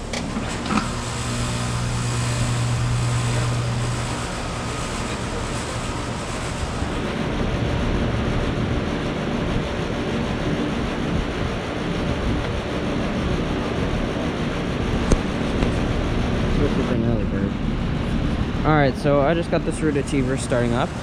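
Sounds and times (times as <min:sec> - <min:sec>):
heat pump click: 0:00.0 - 0:01.2, 0:15.0 - 0:15.8
compressor humming: 0:00.0 - 0:21.0
fan rushing: 0:00.0 - 0:21.0.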